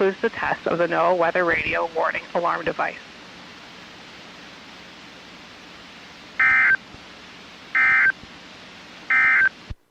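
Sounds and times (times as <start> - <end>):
radio static hiss: 0.0 - 9.9
digital data tone bursts: 6.4 - 6.8, 7.8 - 8.2, 9.1 - 9.5.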